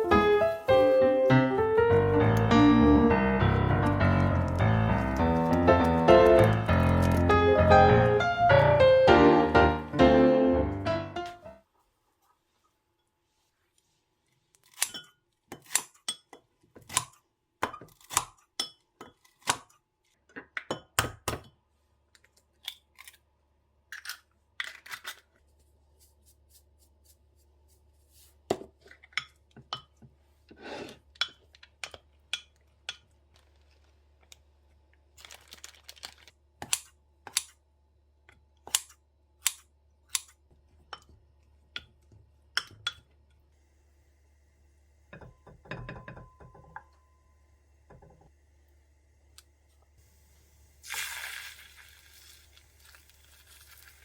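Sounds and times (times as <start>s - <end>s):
dishes and utensils clinking: 45.2s - 46.9s.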